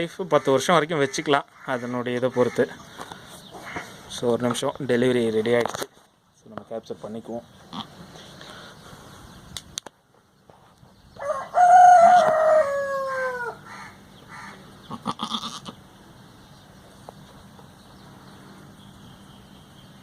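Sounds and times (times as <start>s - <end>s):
rooster crowing: 11.2s - 14.6s.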